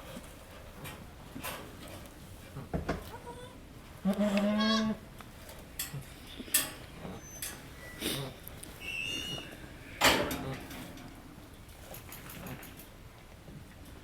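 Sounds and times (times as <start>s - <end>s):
rustles and knocks: 0.0s - 3.2s, 8.7s - 14.0s.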